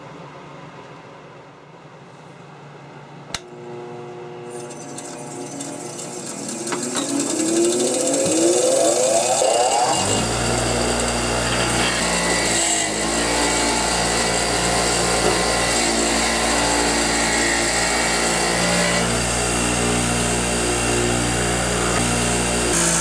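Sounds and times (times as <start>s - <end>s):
wire wheel brushing metal: 4.4s - 18.1s.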